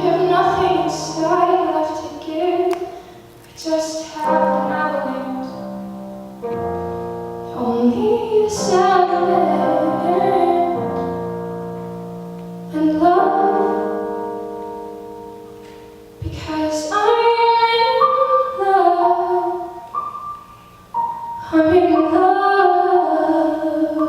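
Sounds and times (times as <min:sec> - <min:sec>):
woman singing: 0:00.0 - 0:05.8, 0:07.5 - 0:11.1, 0:12.7 - 0:14.2, 0:16.2 - 0:19.9, 0:21.4 - 0:24.0
piano chords: 0:00.0 - 0:24.0.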